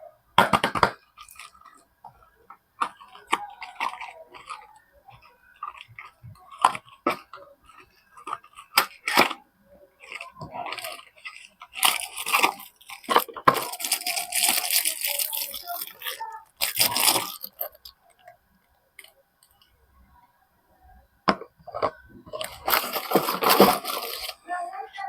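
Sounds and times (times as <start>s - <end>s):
wrapper crinkling and tearing: 2.8s - 9.4s, 10.0s - 18.0s, 22.3s - 24.4s.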